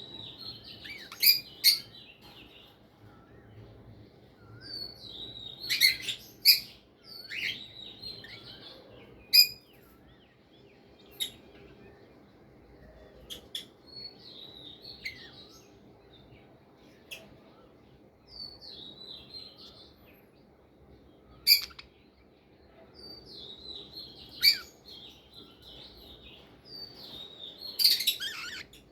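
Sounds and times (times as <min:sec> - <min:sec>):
budgerigars chirping: 0:21.4 - 0:22.0, 0:24.3 - 0:24.8, 0:27.7 - 0:28.9.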